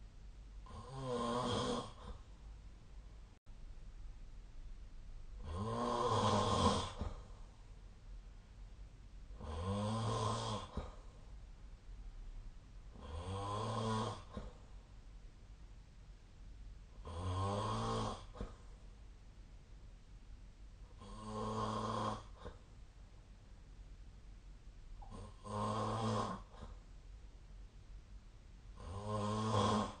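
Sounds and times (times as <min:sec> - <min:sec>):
person snoring: 0:00.6 - 0:02.3, 0:05.4 - 0:07.3, 0:09.4 - 0:11.0, 0:12.9 - 0:14.6, 0:17.0 - 0:18.6, 0:21.0 - 0:22.6, 0:25.0 - 0:26.8, 0:28.8 - 0:30.0
quiet breathing: 0:00.6 - 0:02.6, 0:05.4 - 0:07.8, 0:09.3 - 0:11.6, 0:12.9 - 0:15.0, 0:16.9 - 0:19.0, 0:20.8 - 0:22.9, 0:25.0 - 0:27.0.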